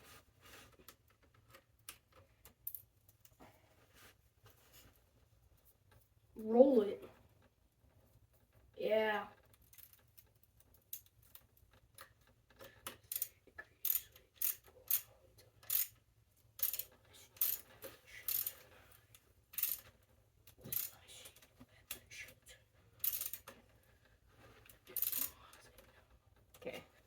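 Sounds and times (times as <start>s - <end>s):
metallic clinks of bicycle parts: 12.6s - 16.0s, 16.6s - 18.6s, 23.0s - 23.6s, 24.8s - 25.4s.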